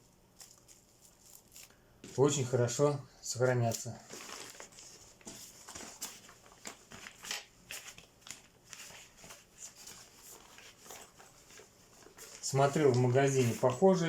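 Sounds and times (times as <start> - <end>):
cooler bag rustling: 3.9 - 7.2.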